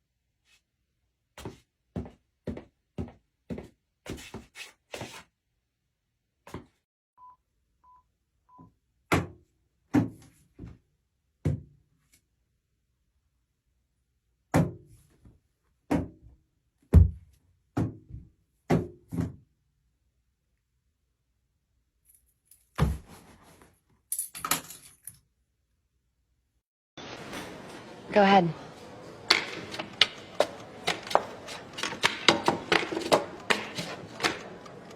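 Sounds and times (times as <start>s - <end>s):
props thunking and knocking: 29.2s - 34.9s.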